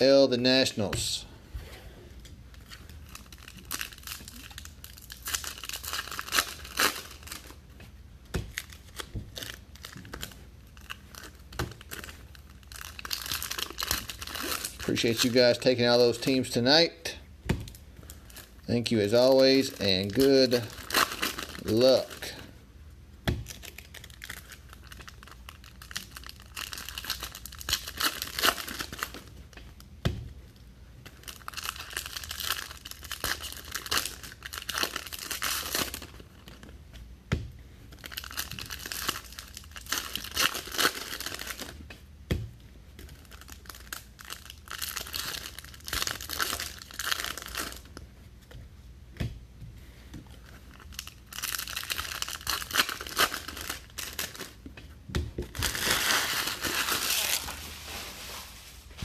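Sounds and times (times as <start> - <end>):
wrappers tearing and crinkling: 2.5 - 7.6, 8.5 - 16.3, 17.7 - 22.5, 23.5 - 29.4, 31.1 - 36.7, 37.9 - 41.8, 43.0 - 48.0, 50.4 - 54.6, 55.5 - 59.0.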